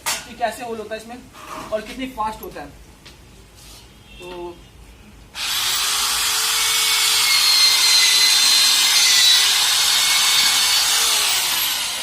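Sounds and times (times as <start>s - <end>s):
electric drill boring through wood: 5.4s - 12.0s.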